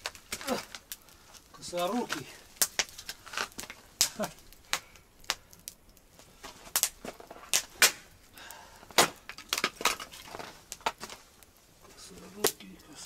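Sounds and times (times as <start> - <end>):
campfire wood cracking: 0.0 - 13.0.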